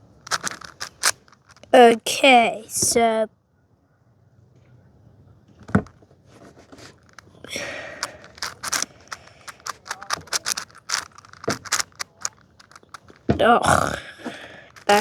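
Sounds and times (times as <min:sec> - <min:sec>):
puzzle cube clicking and scraping: 0:00.2 - 0:02.0, 0:06.8 - 0:14.0, 0:14.7 - 0:15.0.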